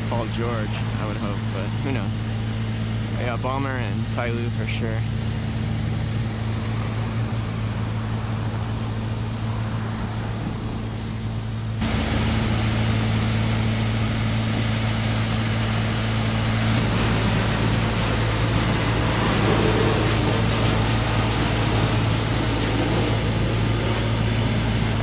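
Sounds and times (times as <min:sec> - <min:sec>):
low machine hum: 0:00.0 - 0:25.0
street traffic: 0:00.0 - 0:25.0.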